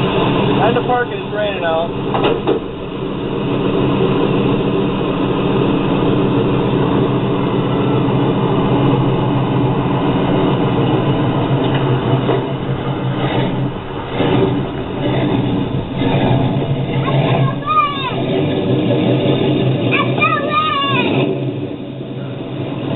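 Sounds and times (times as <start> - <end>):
car engine idling: 0.0 - 22.9.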